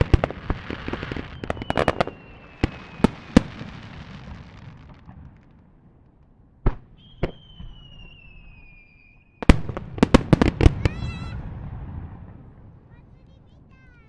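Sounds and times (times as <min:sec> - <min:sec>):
rapid volley of firework reports: 0:00.0 - 0:05.5, 0:09.4 - 0:14.0
whistling firework: 0:00.0 - 0:05.7, 0:06.7 - 0:12.8
firework bangs: 0:00.0 - 0:14.0.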